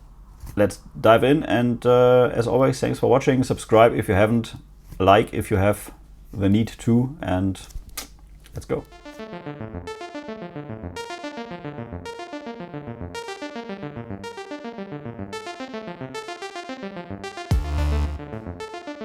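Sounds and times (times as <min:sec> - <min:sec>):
synthesizer arpeggio: 0:08.9 - 0:19.0.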